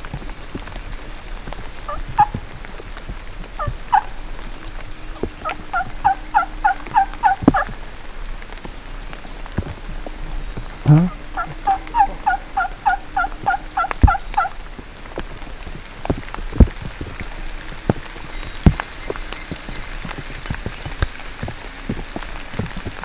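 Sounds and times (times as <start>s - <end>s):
rain dripping: 0.0s - 23.0s
turkey yelps: 1.9s - 2.4s, 3.6s - 4.2s, 5.0s - 7.7s, 10.9s - 14.6s.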